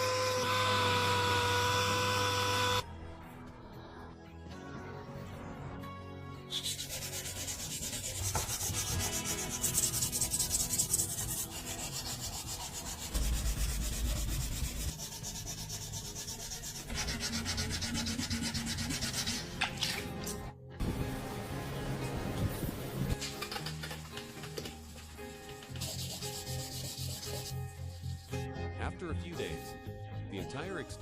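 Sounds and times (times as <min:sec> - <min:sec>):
sanding on metal panels: 0:06.5 - 0:19.5, 0:25.7 - 0:28.4.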